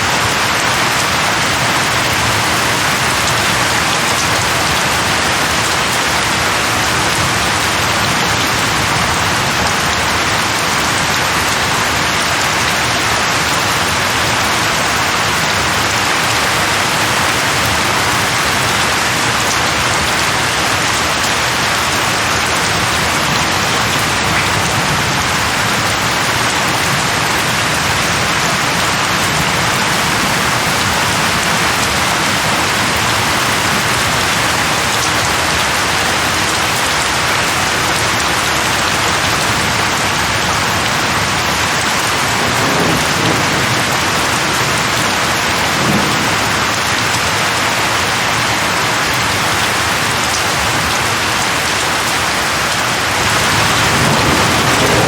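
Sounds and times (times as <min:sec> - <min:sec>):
steady rain: 0:00.0 - 0:55.0
thunder rumble: 0:21.6 - 0:36.7, 0:41.1 - 0:47.3, 0:53.1 - 0:55.0.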